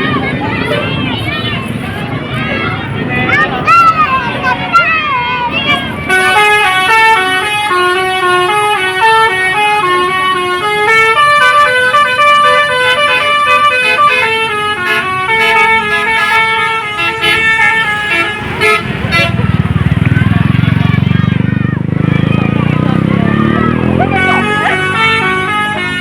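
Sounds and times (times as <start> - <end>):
bus melody horn tune: 4.2 - 21.2, 22.2 - 26.0.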